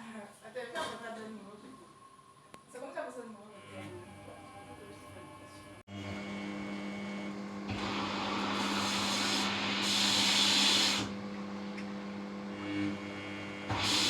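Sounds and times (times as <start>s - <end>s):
washing machine motor hum: 3.6s - 14.0s.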